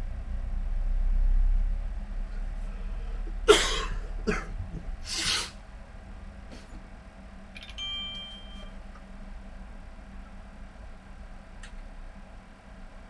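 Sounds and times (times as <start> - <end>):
low steady hum: 0.0 - 13.0
person coughing: 3.5 - 5.6
faint high steady tone: 7.7 - 8.8.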